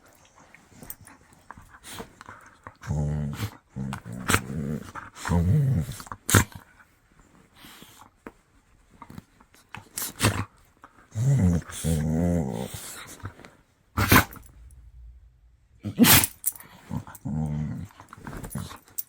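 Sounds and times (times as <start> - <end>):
dog growling: 2.8 - 6.0, 11.1 - 13.2, 14.0 - 18.7.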